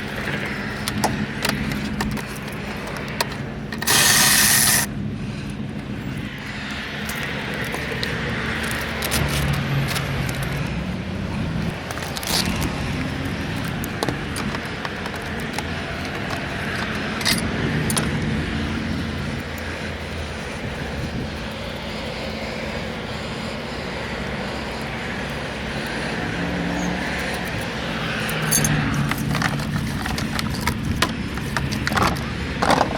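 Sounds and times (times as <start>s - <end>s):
vehicle noise with low hum: 0.0s - 32.9s.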